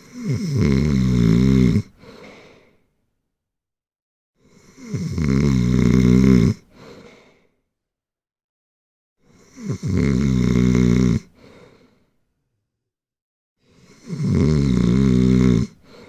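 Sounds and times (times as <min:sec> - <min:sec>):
loud snoring: 0:00.0 - 0:02.0, 0:04.4 - 0:06.7, 0:09.3 - 0:11.4, 0:13.8 - 0:15.9
faint breath: 0:01.9 - 0:02.9, 0:06.7 - 0:07.6, 0:11.3 - 0:12.3, 0:15.8 - 0:16.0.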